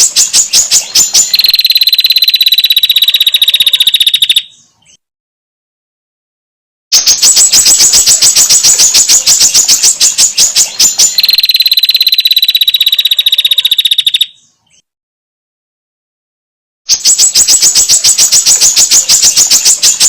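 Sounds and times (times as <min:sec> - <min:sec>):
bird trilling: 0:00.0 - 0:04.7, 0:06.9 - 0:14.5, 0:16.9 - 0:20.0.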